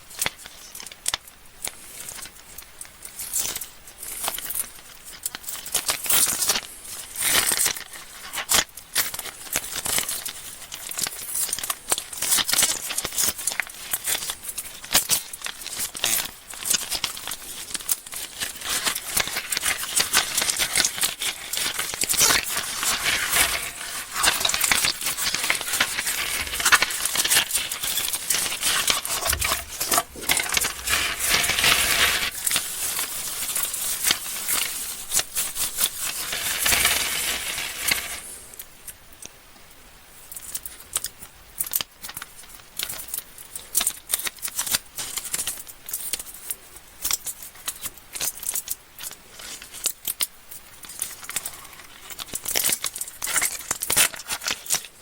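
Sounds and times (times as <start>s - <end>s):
candy wrappers crinkling: 7.4s - 38.4s, 48.2s - 55.0s.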